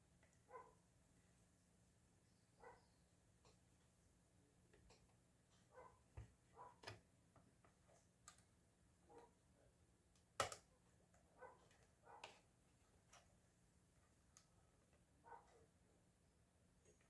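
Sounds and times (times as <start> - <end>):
faint clicks and light taps: 4.7 - 8.6.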